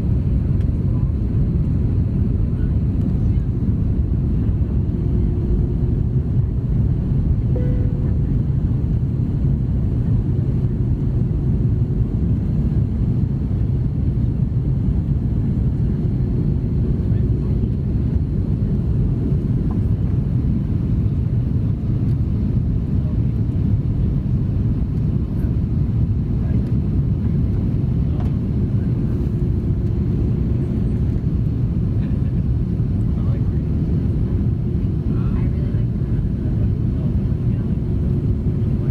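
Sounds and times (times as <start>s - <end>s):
airliner cabin engine rumble: 0.0s - 38.9s
faint steady hum: 4.3s - 9.4s.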